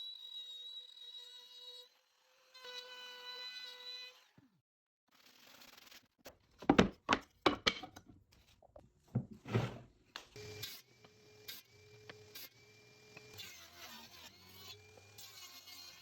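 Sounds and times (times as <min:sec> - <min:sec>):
power tool motor humming: 0:10.4 - 0:16.0.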